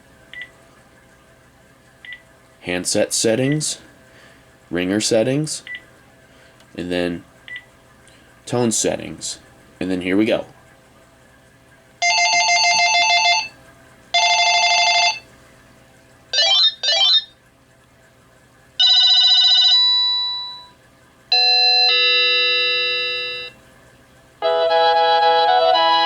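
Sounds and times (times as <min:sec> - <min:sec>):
multi-note ringtone tune: 0:12.0 - 0:13.5, 0:14.2 - 0:15.2, 0:16.4 - 0:17.3, 0:21.3 - 0:23.5, 0:24.4 - 0:26.0
fast-trilling electronic ring: 0:16.4 - 0:17.3.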